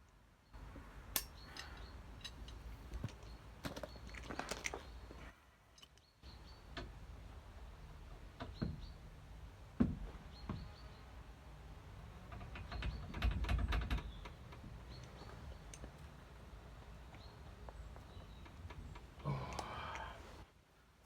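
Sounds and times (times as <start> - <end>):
metal tools clinking and knocking: 1.2 - 5.0.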